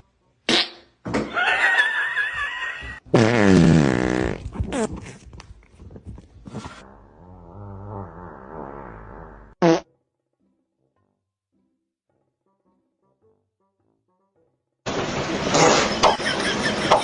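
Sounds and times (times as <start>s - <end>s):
farting sounds: 0.5s - 1.0s, 3.0s - 5.3s, 6.5s - 9.9s.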